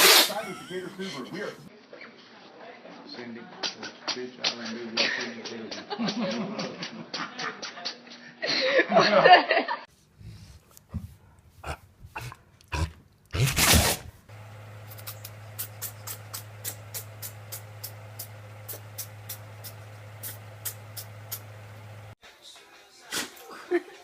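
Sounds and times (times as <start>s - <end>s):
pet sneezing: 0.0s - 0.6s, 11.6s - 14.1s, 23.1s - 23.5s
steady low hum: 14.3s - 22.2s.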